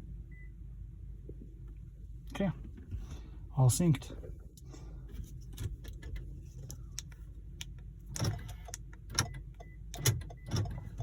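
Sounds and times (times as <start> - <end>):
steady low hum: 0.0 - 11.0
car key clicks and taps: 5.5 - 11.0.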